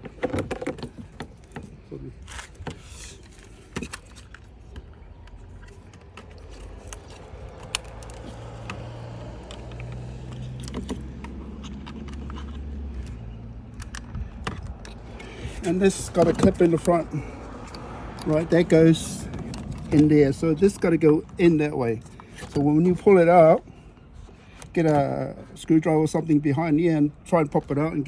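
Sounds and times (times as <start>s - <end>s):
plastic trim clicks and rattles: 2.5s - 17.0s.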